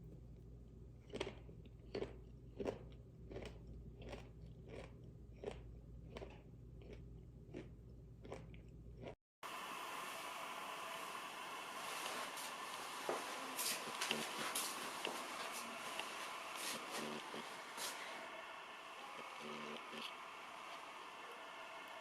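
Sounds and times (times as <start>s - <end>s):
person chewing crunchy food: 0.9s - 9.2s, 13.2s - 18.2s.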